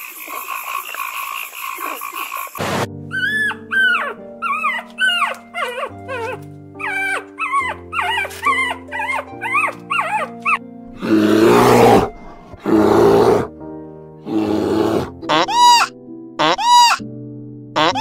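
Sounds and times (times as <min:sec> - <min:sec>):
background music: 0:02.8 - 0:18.0
short high cries: 0:15.3 - 0:17.0.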